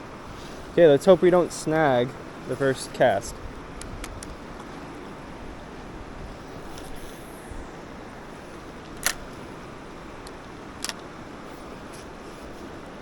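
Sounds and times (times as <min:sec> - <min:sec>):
fast river rushing: 0:00.0 - 0:13.0
sharp clicks: 0:08.9 - 0:09.2, 0:10.2 - 0:11.1.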